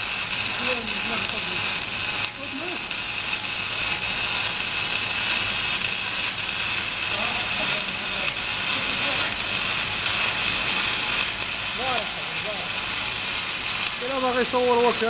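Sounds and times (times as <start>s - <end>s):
arc welding crackling hiss: 0.0s - 15.0s.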